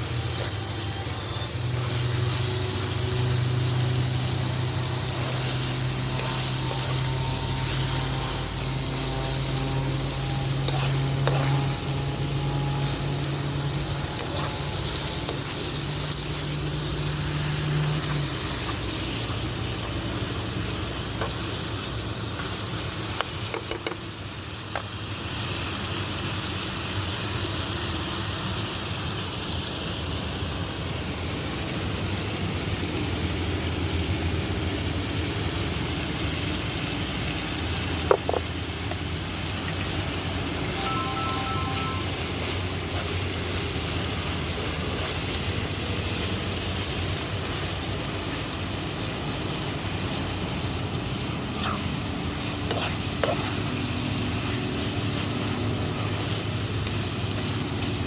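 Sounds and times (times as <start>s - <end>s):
low hum: 0.0s - 19.6s
food sizzling in a pan: 0.0s - 58.0s.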